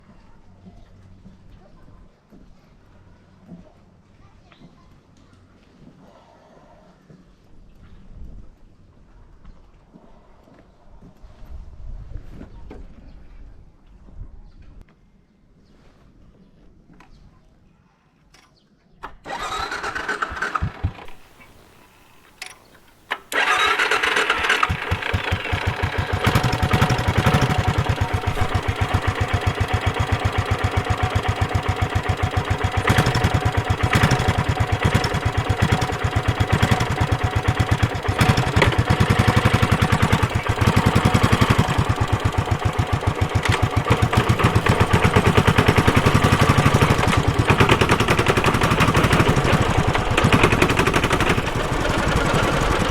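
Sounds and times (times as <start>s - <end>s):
motorcycle engine starting and running: 19.1s - 52.9s.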